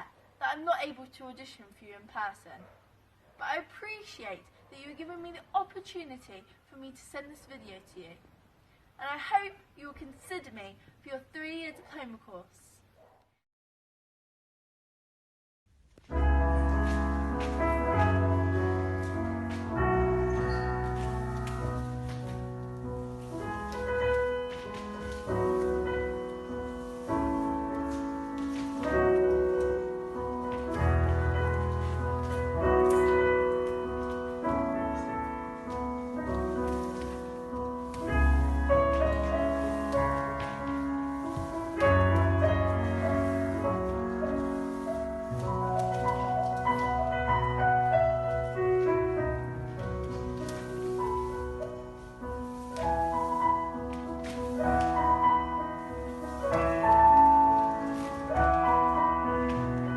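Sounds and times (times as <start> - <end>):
classical solo piano: 16.1 - 59.9.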